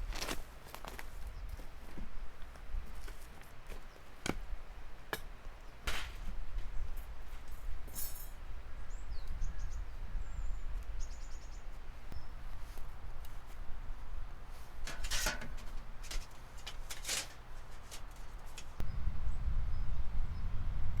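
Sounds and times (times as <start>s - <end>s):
handling noises: 5.1s - 8.4s, 14.4s - 18.8s
bird chirps: 8.8s - 12.4s.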